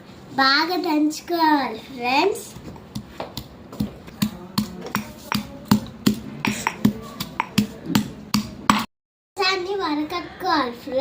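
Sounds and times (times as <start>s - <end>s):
pestle pounding in stone mortar: 2.5s - 8.9s.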